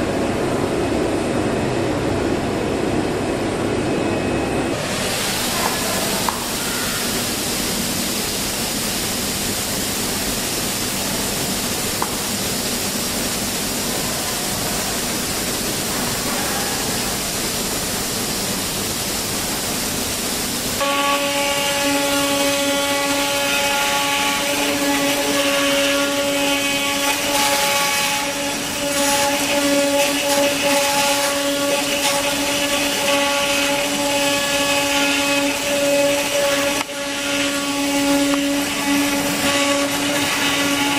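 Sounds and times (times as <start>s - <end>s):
machine whine: 0.0s - 8.3s, 20.8s - 40.9s.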